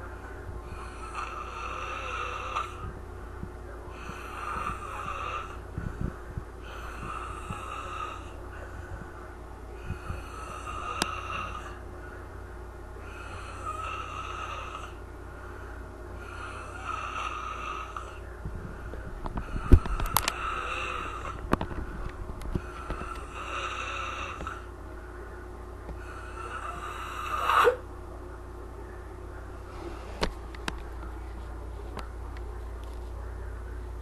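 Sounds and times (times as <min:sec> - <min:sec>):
person snoring: 0:00.7 - 0:02.8, 0:09.9 - 0:11.8, 0:13.0 - 0:15.0, 0:22.6 - 0:24.7, 0:26.0 - 0:27.8.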